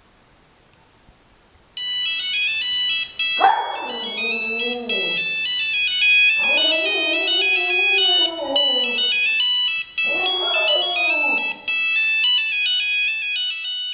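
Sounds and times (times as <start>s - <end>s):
phone ringtone melody: 1.8s - 13.9s
dog howling: 3.4s - 5.5s, 6.3s - 9.3s, 10.1s - 11.6s.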